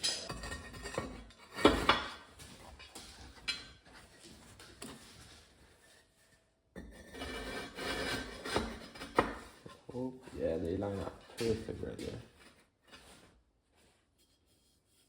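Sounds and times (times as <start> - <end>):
metal knocks and scraping: 0.0 - 5.3.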